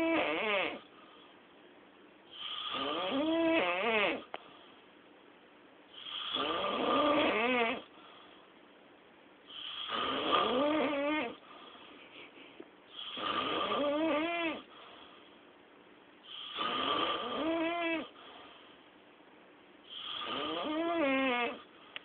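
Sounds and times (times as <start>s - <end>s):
long whining snores: 0.0s - 1.2s, 2.3s - 4.4s, 5.9s - 8.4s, 9.5s - 11.9s, 12.9s - 15.2s, 16.2s - 18.7s, 19.8s - 21.7s
quiet breaths: 0.8s - 1.6s, 4.2s - 5.1s, 7.8s - 8.8s, 11.4s - 13.5s, 14.6s - 15.6s, 18.1s - 19.1s, 19.8s - 22.0s.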